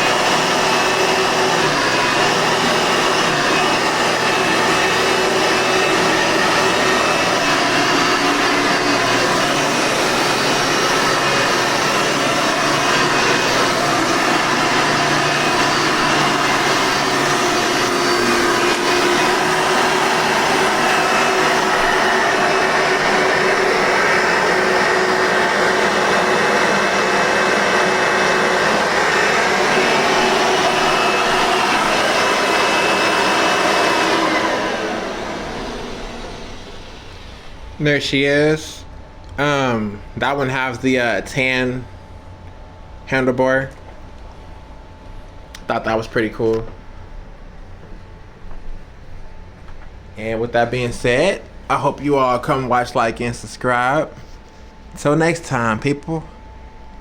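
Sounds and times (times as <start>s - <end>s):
vacuum cleaner motor running: 0.0s - 38.8s.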